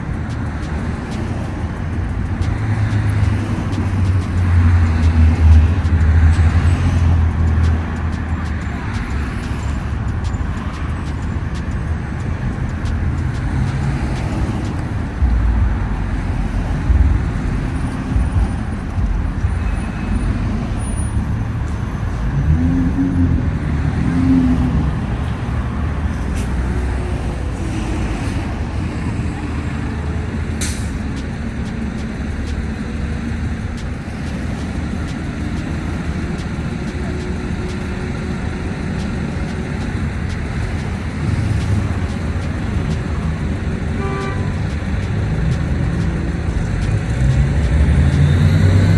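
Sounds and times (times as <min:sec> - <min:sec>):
engine revving: 0:00.0 - 0:18.5, 0:29.2 - 0:48.9
traffic passing: 0:00.0 - 0:48.9.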